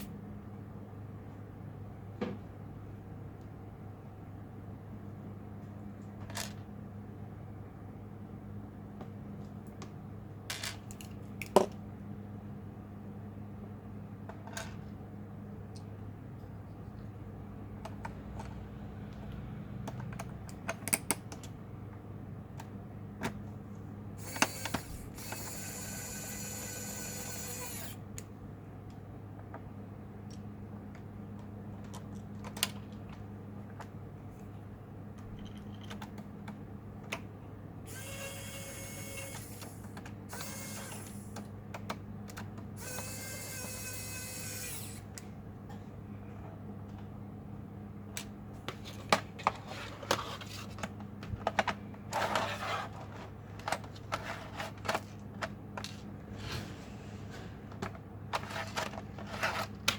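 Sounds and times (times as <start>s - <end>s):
tools and plastic parts clicking: 19.8s - 21.6s, 57.7s - 59.9s
small electric screwdriver whirring: 24.2s - 28.0s, 37.9s - 41.4s, 42.8s - 45.1s.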